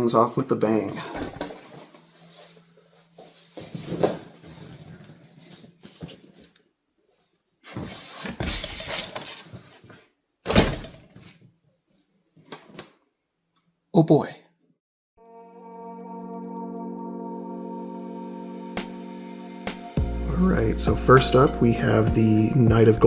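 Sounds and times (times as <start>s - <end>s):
scraping and rustling: 1.0s - 6.6s.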